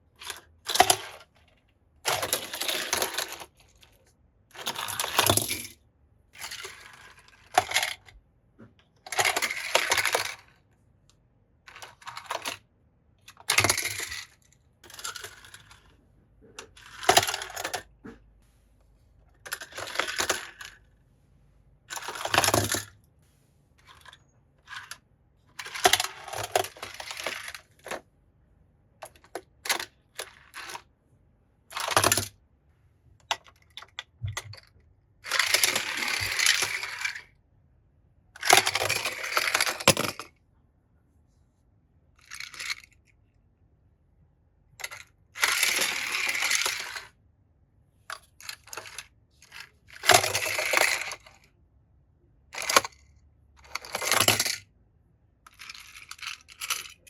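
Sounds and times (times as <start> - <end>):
toy cars clattering: 0.2 - 5.8, 6.4 - 8.2, 9.0 - 10.6, 11.7 - 12.6, 13.2 - 18.2, 19.3 - 20.9, 21.9 - 23.0, 23.8 - 28.0, 29.0 - 30.9, 31.7 - 32.4, 33.3 - 37.3, 38.4 - 40.3, 42.2 - 43.1, 44.8 - 47.2, 48.1 - 51.5, 52.5 - 54.7, 55.5 - 57.0.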